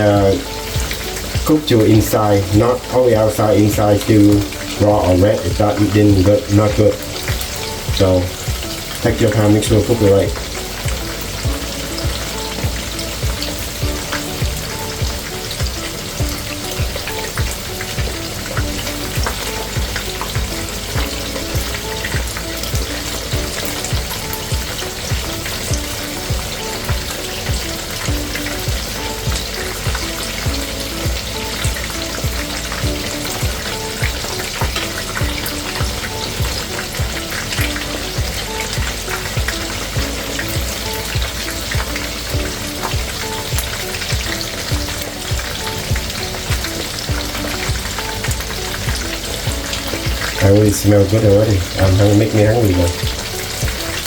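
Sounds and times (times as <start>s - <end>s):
background music with beat: 0.0s - 54.0s
chicken deep-frying in oil: 0.0s - 54.0s.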